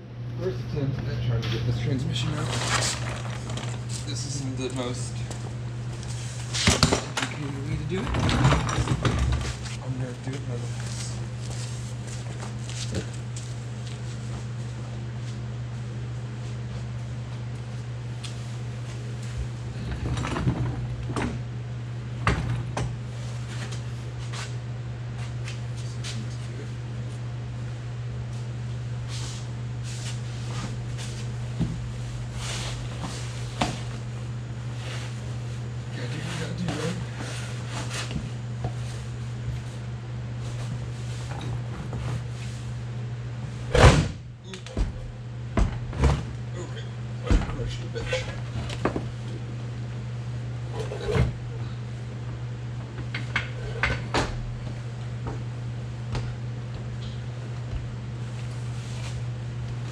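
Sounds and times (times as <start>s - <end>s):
steady low hum: 0.0s - 59.9s
scraping and rustling of hand work: 2.3s - 4.3s, 7.9s - 15.5s, 28.3s - 31.3s, 32.2s - 34.0s, 34.7s - 39.8s, 58.3s - 59.3s.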